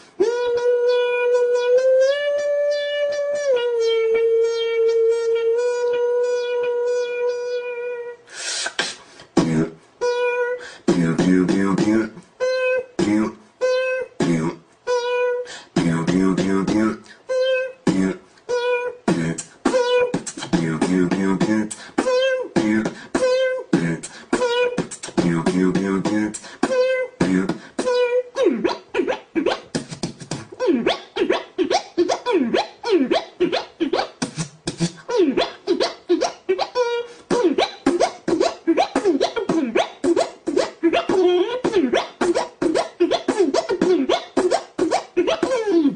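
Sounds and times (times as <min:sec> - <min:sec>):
person beatboxing: 0:00.0 - 0:45.9.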